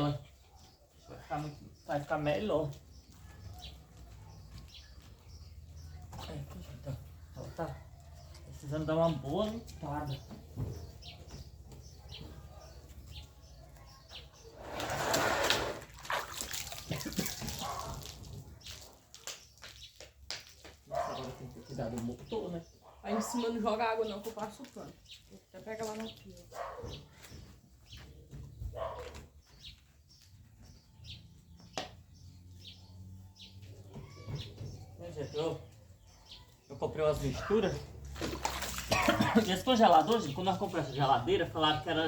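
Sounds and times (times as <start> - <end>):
small birds chirping: 0.0 - 42.0
water splashing onto refrigerator: 14.8 - 18.5, 38.0 - 40.4.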